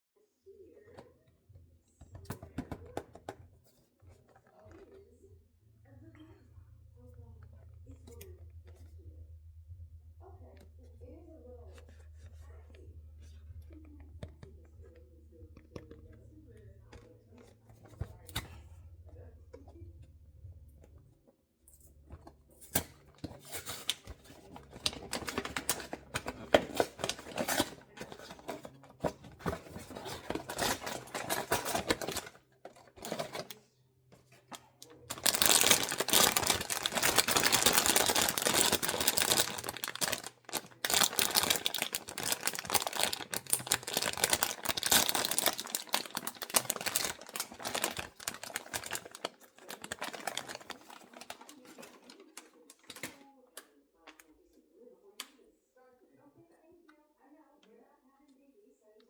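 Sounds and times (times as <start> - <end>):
packaging crackling and tearing: 22.8 - 33.5, 35.1 - 53.2.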